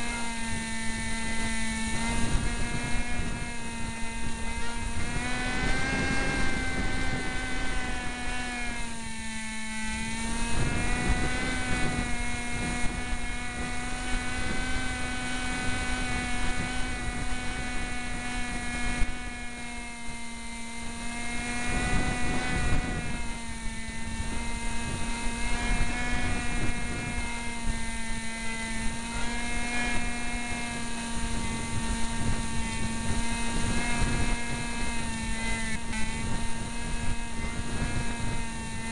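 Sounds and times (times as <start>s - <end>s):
model plane motor and propeller whining: 0.0s - 38.9s
wind buffeting microphone: 0.0s - 38.9s.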